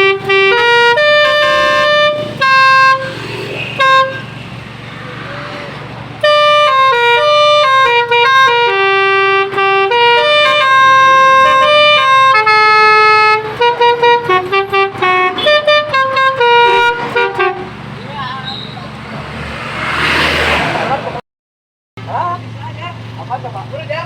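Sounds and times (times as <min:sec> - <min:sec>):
musical car horn tune: 0:00.0 - 0:04.6, 0:06.2 - 0:19.0.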